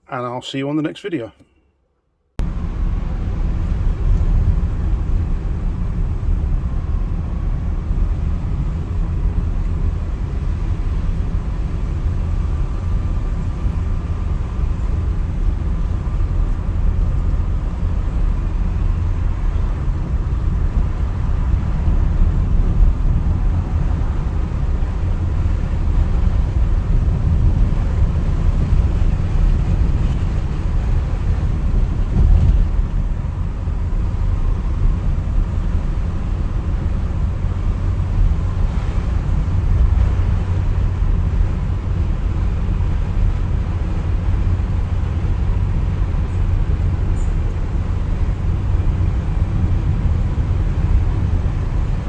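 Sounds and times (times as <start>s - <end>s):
car engine and road noise: 2.4s - 52.0s.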